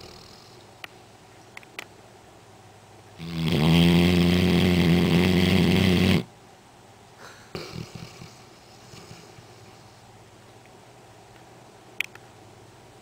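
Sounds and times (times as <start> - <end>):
dog snoring loudly: 0.0 - 0.6, 3.2 - 6.3, 7.6 - 9.9.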